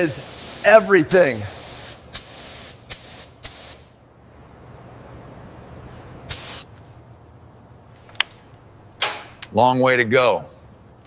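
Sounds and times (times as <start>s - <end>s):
hissing spray bursts: 0.0s - 3.9s, 6.3s - 6.7s.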